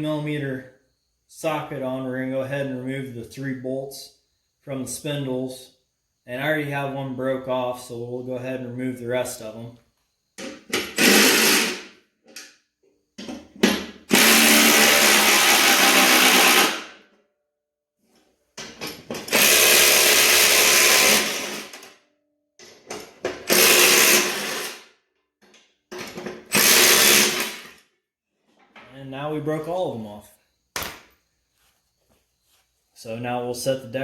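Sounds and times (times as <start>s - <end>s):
power tool bursts: 10.8s - 12.0s, 14.1s - 17.0s, 19.2s - 21.9s, 23.4s - 24.9s, 26.5s - 27.8s.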